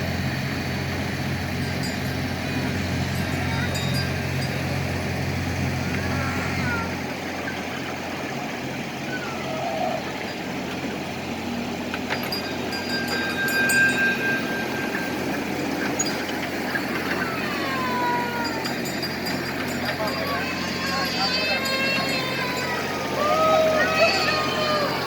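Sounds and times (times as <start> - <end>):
ride train rumbling: 0.0 - 25.0
high held tone: 12.3 - 25.0.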